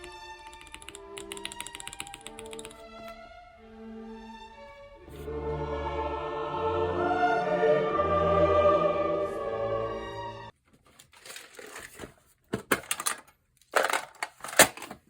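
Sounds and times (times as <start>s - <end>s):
mechanical keyboard typing: 0.0s - 2.8s
choral music: 0.0s - 10.5s.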